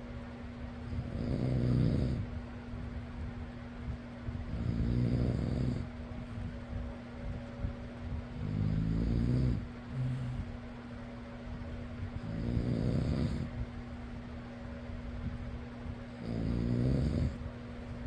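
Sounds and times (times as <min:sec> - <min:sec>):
electric fan humming: 0:00.0 - 0:18.0
person snoring: 0:00.9 - 0:02.2, 0:04.5 - 0:05.8, 0:08.4 - 0:10.4, 0:12.2 - 0:13.5, 0:16.2 - 0:17.4.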